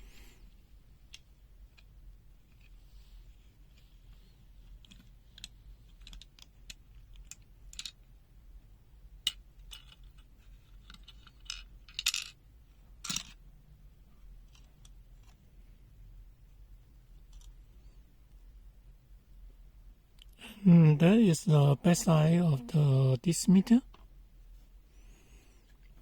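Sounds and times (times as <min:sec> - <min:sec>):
small hard parts clicking: 0:04.6 - 0:08.1, 0:09.2 - 0:12.4.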